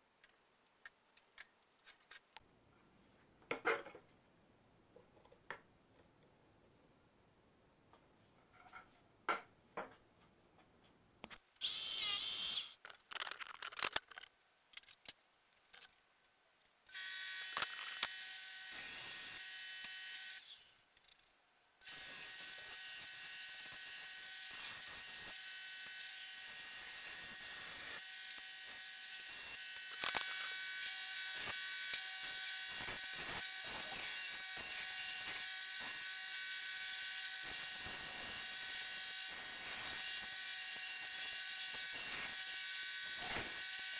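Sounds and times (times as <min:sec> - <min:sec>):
power saw cutting wood: 0:16.9 - 0:20.8, 0:21.8 - 0:43.9.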